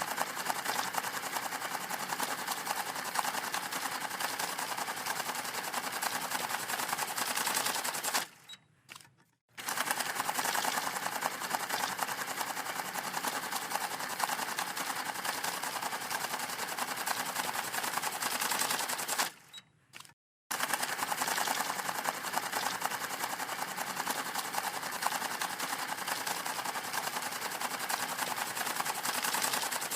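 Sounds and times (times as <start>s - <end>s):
banknote counting machine riffling: 0.0s - 29.9s.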